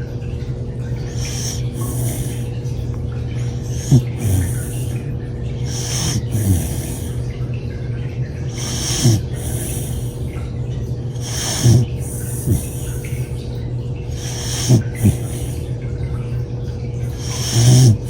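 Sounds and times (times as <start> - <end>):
pet snoring: 1.1 - 2.5, 3.5 - 5.0, 5.7 - 7.2, 8.5 - 10.4, 11.2 - 13.3, 14.1 - 15.7, 17.0 - 18.0.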